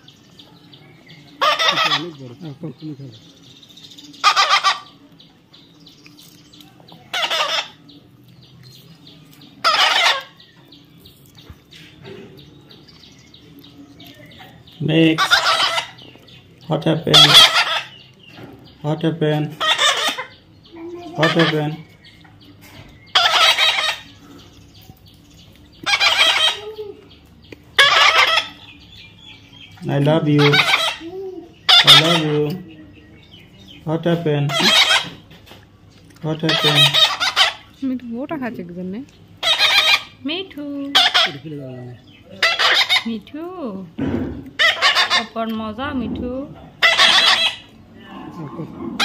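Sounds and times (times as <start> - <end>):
parrot squawking: 1.4 - 2.4, 4.2 - 5.0, 7.1 - 7.9, 9.6 - 10.5, 14.4 - 16.1, 16.9 - 18.0, 19.5 - 22.0, 23.1 - 24.2, 25.8 - 27.1, 27.7 - 28.8, 29.5 - 32.7, 34.4 - 35.3, 36.4 - 37.8, 39.4 - 40.3, 40.9 - 43.3, 44.5 - 49.0.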